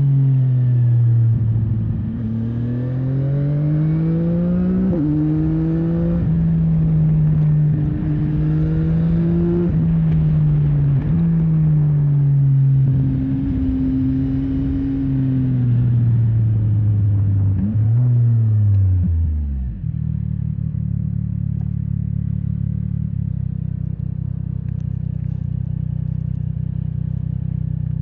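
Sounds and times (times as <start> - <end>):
motorcycle engine revving down: 0.9 - 20.4
motorcycle engine idling: 19.9 - 28.0.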